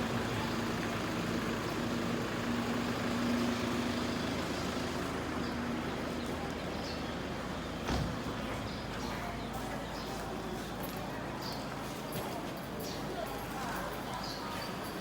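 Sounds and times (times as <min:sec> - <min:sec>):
engine hum: 0:00.0 - 0:09.0
road noise: 0:00.0 - 0:09.9.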